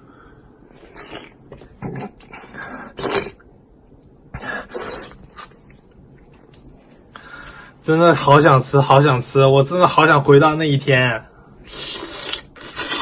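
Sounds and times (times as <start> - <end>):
person eating close to microphone: 0.8 - 2.4, 11.7 - 13.0.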